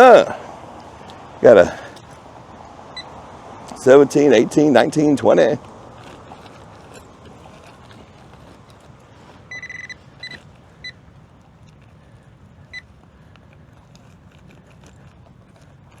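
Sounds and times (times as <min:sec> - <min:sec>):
steady background noise: 0:00.0 - 0:16.0
pinpointer beeping: 0:09.5 - 0:11.0.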